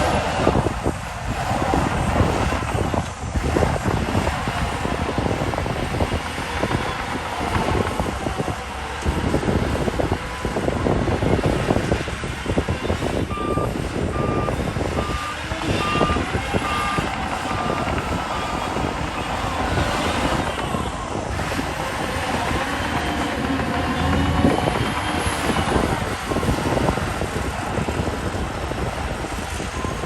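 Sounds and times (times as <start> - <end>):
diesel engine under load: 0.0 - 30.0
reversing alarm beeping: 12.6 - 27.4, 29.3 - 30.0.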